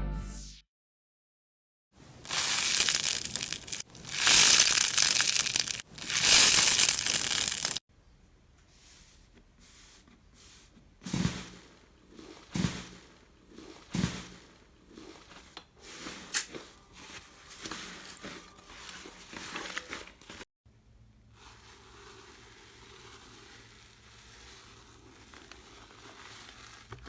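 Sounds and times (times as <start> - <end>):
slime crackling and tearing: 2.3 - 7.8.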